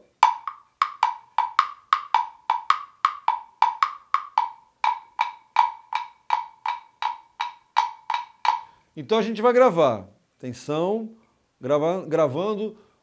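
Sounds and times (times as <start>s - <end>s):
woodblock knocks like hoofbeats: 0.0s - 8.8s.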